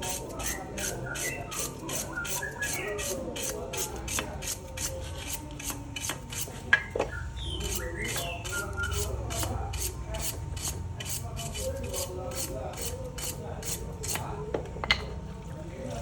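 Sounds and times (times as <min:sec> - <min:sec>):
rhythmic rasping strokes: 0:00.0 - 0:06.7, 0:07.5 - 0:14.3
faint voices talking: 0:00.0 - 0:16.0.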